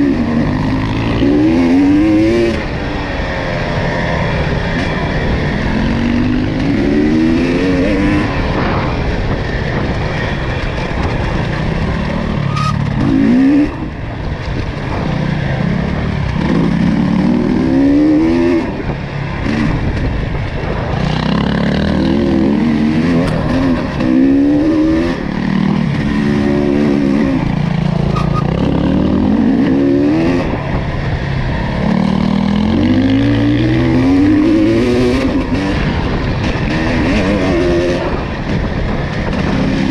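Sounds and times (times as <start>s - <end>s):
atv engine revving: 0.0s - 39.9s.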